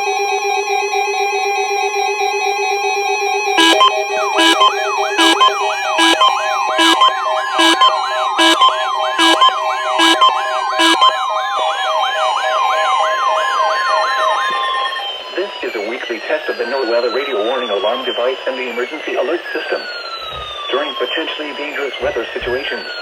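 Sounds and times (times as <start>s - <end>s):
rising siren whoops: 3.6s - 11.2s
steady alarm tone: 3.6s - 11.2s.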